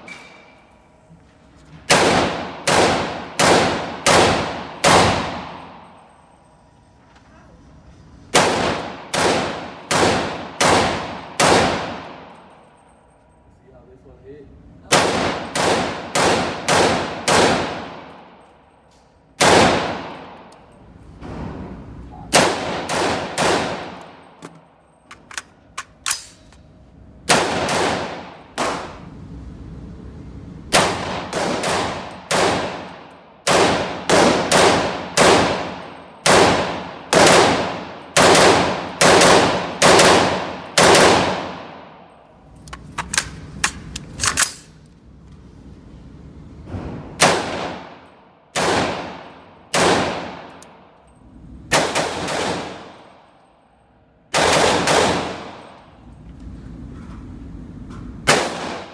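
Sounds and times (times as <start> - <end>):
semi-automatic gunshots with echo: 1.9 - 6.1, 8.3 - 12.7, 14.9 - 18.5, 19.4 - 20.5, 22.3 - 24.6, 27.3 - 29.1, 30.7 - 42.2, 47.2 - 51.0, 51.7 - 53.4, 54.3 - 55.9, 58.3 - 58.9.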